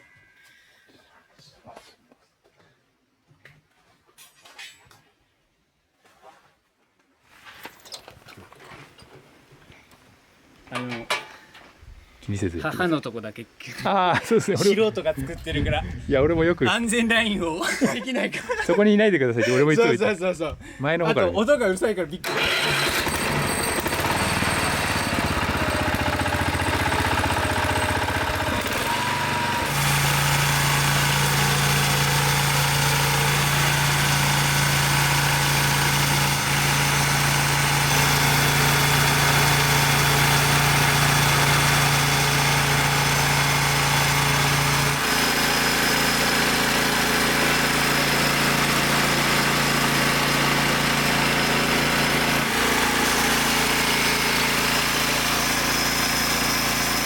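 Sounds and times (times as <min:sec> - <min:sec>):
band sawmill running: 0:22.2 - 0:57.0.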